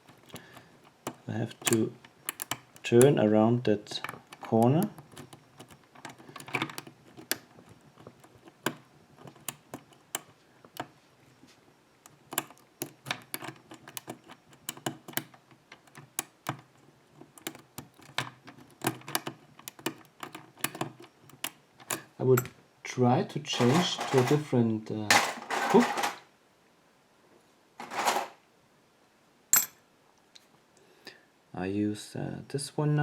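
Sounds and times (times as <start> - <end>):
lock pick clicking on pins: 0.0 - 10.9, 12.0 - 22.5.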